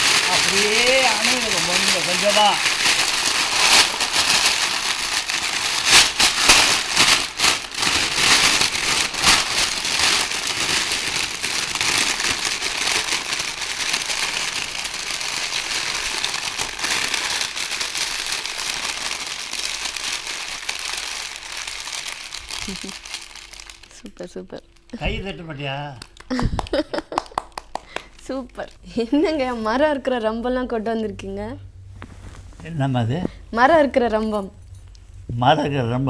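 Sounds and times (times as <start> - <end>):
paper crumpling like fire crackling: 0.0 - 24.0.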